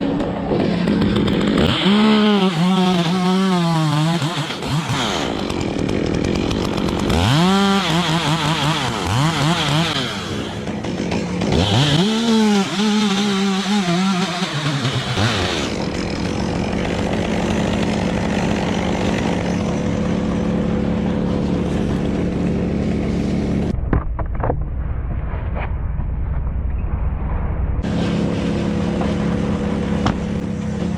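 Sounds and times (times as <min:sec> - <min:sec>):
chainsaw revving: 0:00.0 - 0:23.7, 0:27.8 - 0:30.9.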